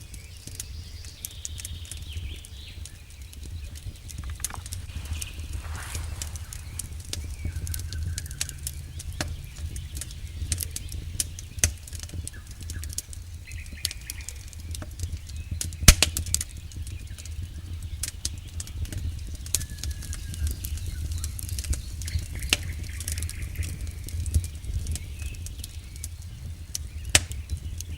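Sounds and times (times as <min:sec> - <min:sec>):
campfire crackling and popping: 0:00.0 - 0:27.9
low rumble: 0:04.2 - 0:13.0.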